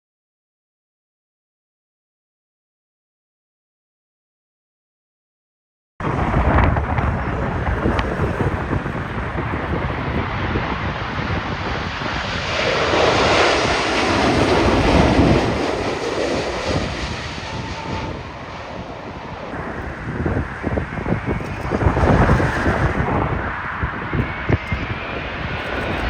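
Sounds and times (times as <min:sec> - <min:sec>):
jet airliner engines passing: 0:06.0 - 0:26.0
wind rumbling on microphone: 0:06.0 - 0:26.0.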